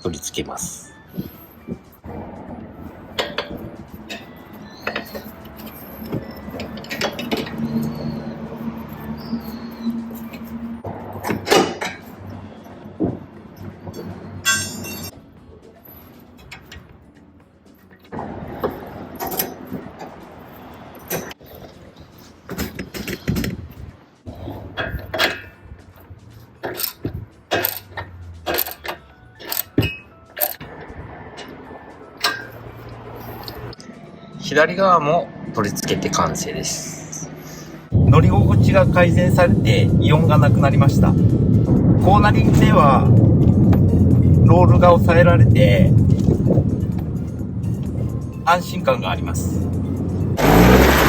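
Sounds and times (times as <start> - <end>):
metallic clinks of tools: 13.9 - 15.2.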